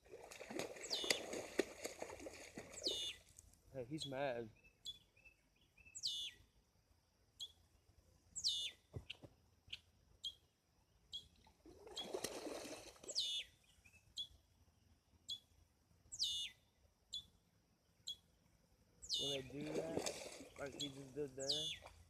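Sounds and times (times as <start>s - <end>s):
short bird chirps: 0.8s - 1.3s, 2.8s - 3.2s, 4.0s - 6.4s, 8.4s - 8.9s, 13.1s - 14.4s, 16.1s - 17.3s, 19.0s - 19.5s, 20.4s - 21.9s
falling bird whistle: 2.8s - 3.2s, 8.4s - 8.8s, 16.2s - 16.6s.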